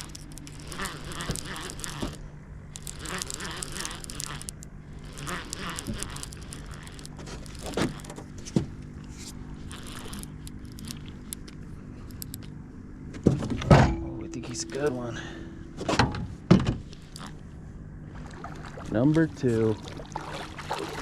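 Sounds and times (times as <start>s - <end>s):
steady low hum: 0.0s - 21.0s
clicks and scrapes of handling: 2.8s - 12.5s.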